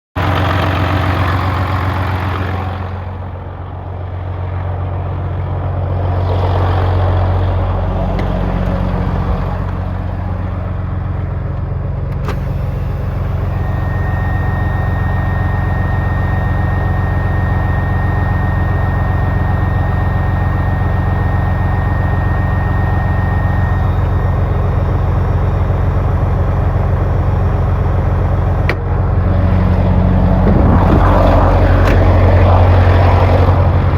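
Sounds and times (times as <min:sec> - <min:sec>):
truck diesel engine idling: 0:00.2 - 0:33.9
steady high whistle: 0:12.5 - 0:28.4.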